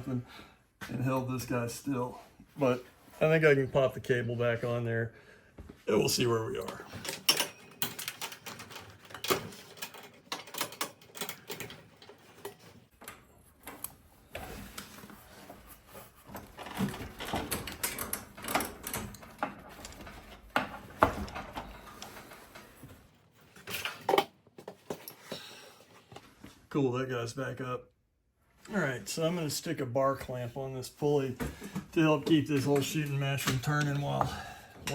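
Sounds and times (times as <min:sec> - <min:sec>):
metallic clicks and clanks: 0:06.6 - 0:13.9, 0:16.6 - 0:22.7.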